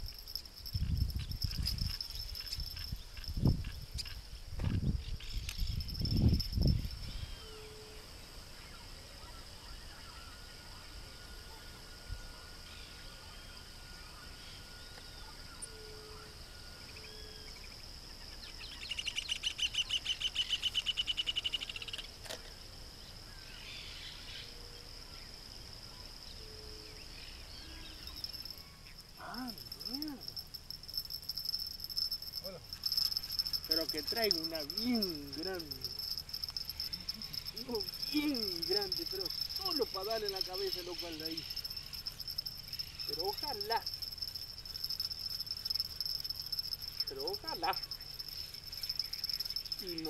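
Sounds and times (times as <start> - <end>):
insects trilling high note: 0.0 - 4.2, 5.0 - 7.9, 27.5 - 50.0
faint bird chirps: 23.2 - 50.0
pulsing buzzing call: 27.9 - 50.0.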